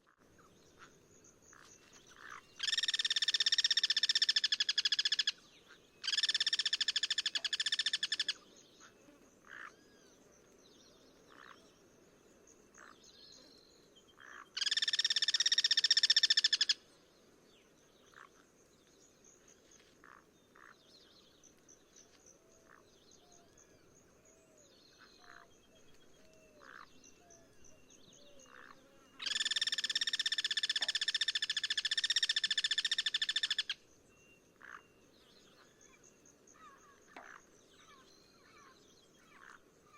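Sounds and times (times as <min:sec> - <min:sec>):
faint high insect-like tone: 0:00.0 - 0:39.9
cuckoo harsh rattling calls: 0:02.2 - 0:05.4, 0:14.6 - 0:16.8, 0:29.2 - 0:33.8.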